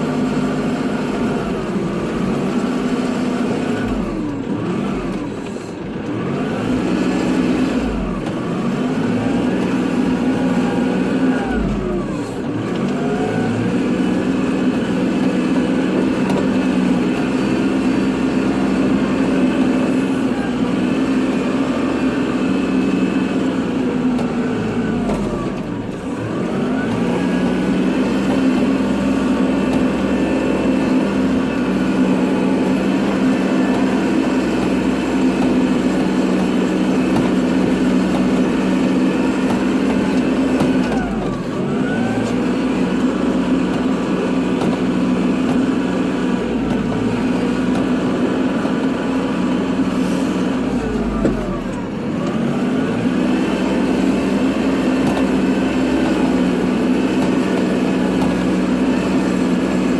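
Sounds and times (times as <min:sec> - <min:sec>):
tractor diesel engine under load: 0:00.0 - 0:59.9.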